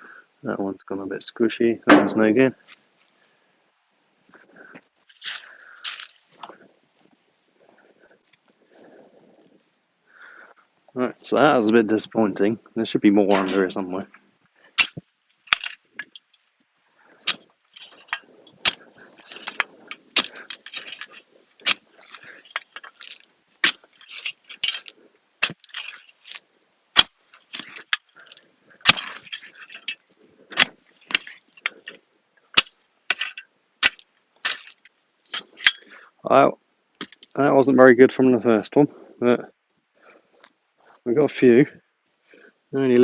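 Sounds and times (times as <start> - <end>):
garden fork digging soil: 17.2 - 26.4, 27.0 - 32.0, 32.6 - 35.8.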